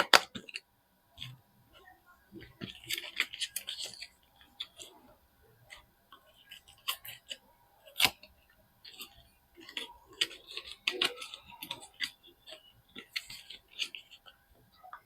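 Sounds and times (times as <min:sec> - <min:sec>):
packaging crinkling and rustling: 0:02.4 - 0:05.0.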